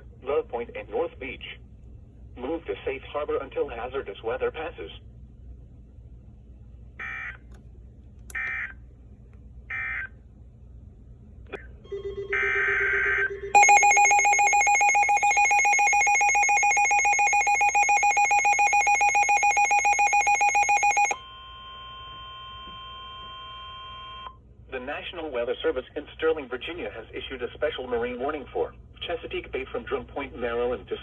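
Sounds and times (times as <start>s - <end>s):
pulsing attention tone: 13.6s - 21.2s.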